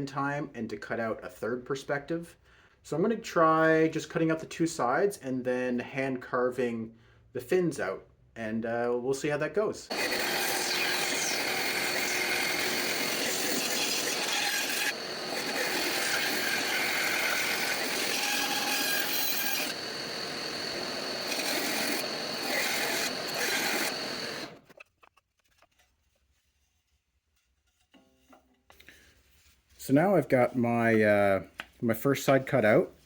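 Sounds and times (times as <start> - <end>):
bandsaw cutting wood: 9.9 - 24.7.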